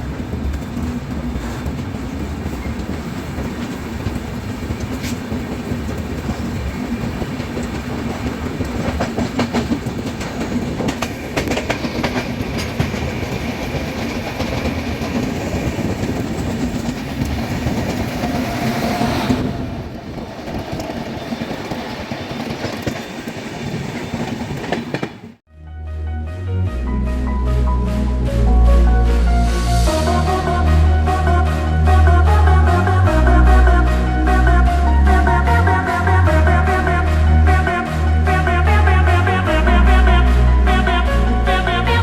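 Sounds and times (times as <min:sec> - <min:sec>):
clacks over rail joints: 0:00.0 - 0:18.6
train wheels rumbling on track: 0:00.0 - 0:25.4
high hiss of train: 0:00.1 - 0:08.7.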